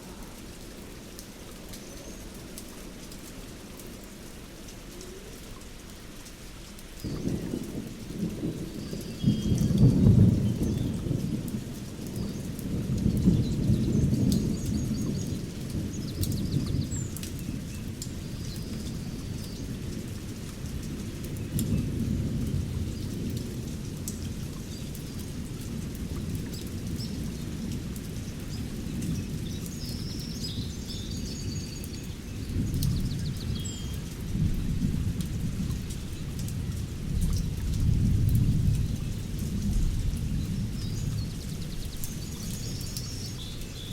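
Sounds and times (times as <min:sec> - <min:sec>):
steady rain: 0:00.0 - 0:43.9
low rolling thunder: 0:07.0 - 0:29.5, 0:32.4 - 0:43.1.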